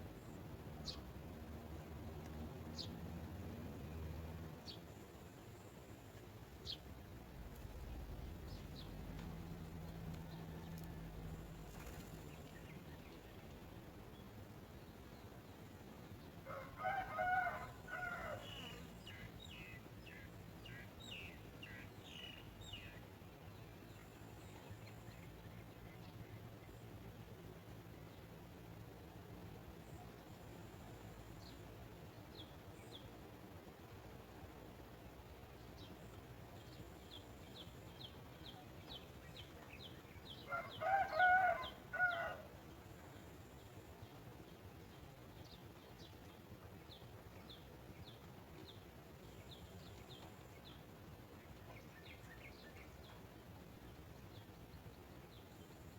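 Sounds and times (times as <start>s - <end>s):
rooster crowing: 16.4s - 18.8s, 40.5s - 42.5s.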